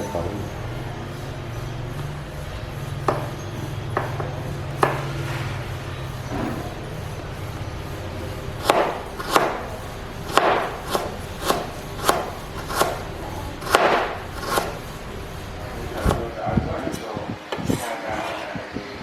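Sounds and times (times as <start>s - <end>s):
knife chopping on wooden board: 4.0s - 5.2s, 8.6s - 14.8s.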